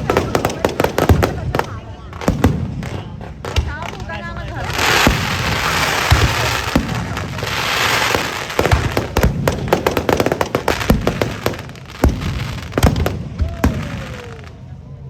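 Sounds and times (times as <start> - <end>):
fireworks cracks and bangs: 0.0 - 14.8
fireworks crackling hiss: 0.0 - 15.0.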